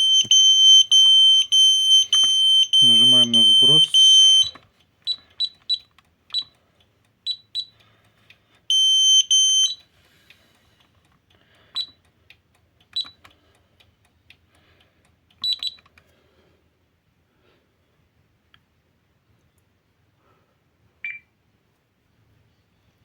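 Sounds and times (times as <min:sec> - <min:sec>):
long steady alarm tone: 0:00.0 - 0:04.6, 0:08.7 - 0:09.9
keypad beeping: 0:00.0 - 0:06.5, 0:07.2 - 0:07.8, 0:08.7 - 0:09.9, 0:11.8 - 0:12.0, 0:12.9 - 0:13.2, 0:15.4 - 0:15.9, 0:21.0 - 0:21.3.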